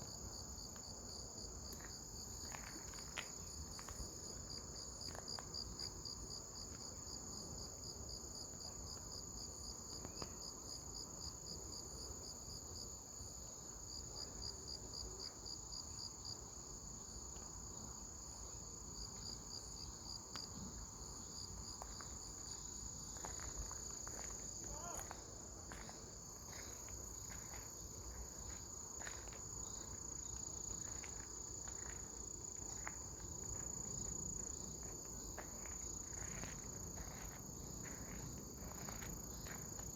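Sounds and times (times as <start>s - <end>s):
cricket steady high trill: 18.9s - 39.9s.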